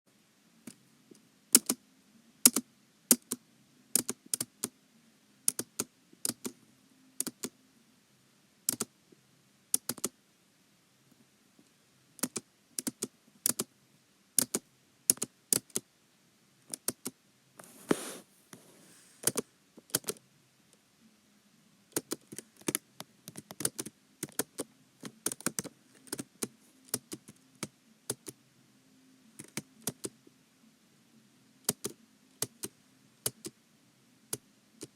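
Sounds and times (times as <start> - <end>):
keyboard keys clicking: 5.5 - 6.6, 7.2 - 7.5, 9.8 - 10.1, 12.2 - 13.7, 14.4 - 15.8, 19.2 - 20.2, 22.0 - 28.4, 29.4 - 30.1, 31.7 - 33.5.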